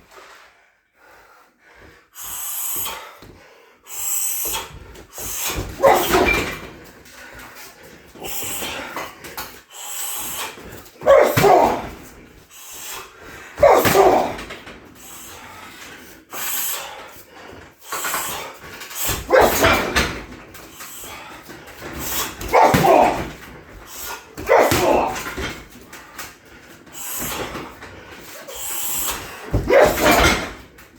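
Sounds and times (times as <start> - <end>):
kicks thudding on heavy bag: 5.2 - 6.8, 10.7 - 12.2, 13.6 - 14.6, 19.2 - 20.4, 21.9 - 25.8, 28.9 - 30.6.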